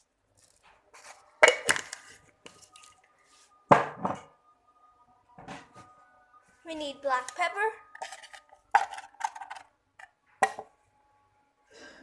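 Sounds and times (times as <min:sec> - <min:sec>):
kitchenware knocking with ringing: 0:03.7 - 0:04.3.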